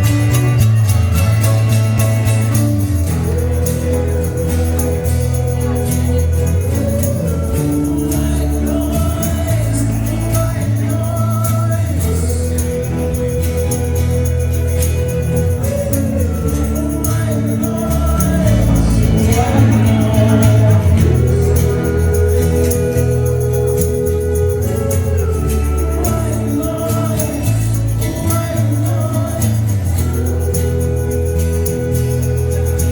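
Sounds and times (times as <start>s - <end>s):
live rock band playing: 0.0s - 9.2s
acoustic guitar chords: 0.0s - 32.9s
bass line: 0.0s - 32.9s
light high percussion: 0.0s - 32.9s
person singing: 0.0s - 32.9s.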